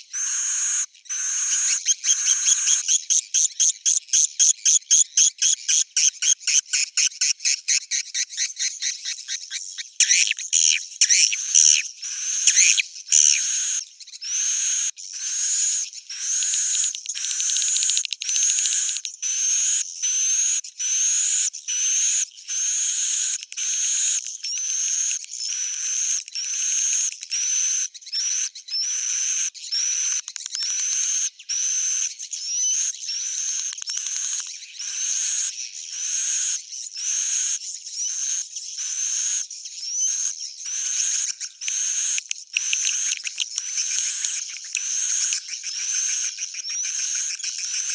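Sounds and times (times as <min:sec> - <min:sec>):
high buzzy bird chirps: 0:07.5 - 0:19.8, 0:28.0 - 0:47.9.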